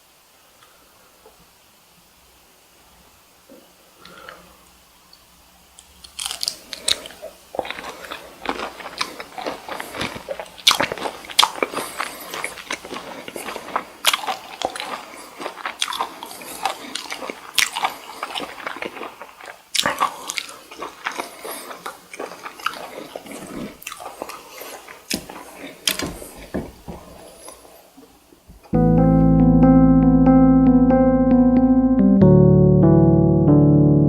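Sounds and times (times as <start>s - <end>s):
person chewing food: 6.0s - 27.7s.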